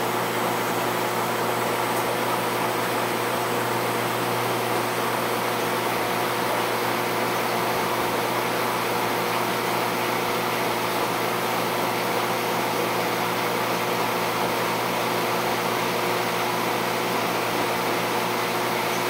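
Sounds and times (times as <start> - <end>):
aquarium equipment humming: 0.0 - 19.0.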